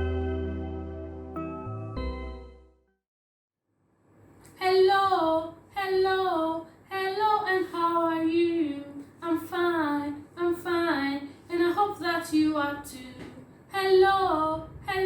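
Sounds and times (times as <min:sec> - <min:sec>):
woman singing unaccompanied: 0:04.6 - 0:15.0.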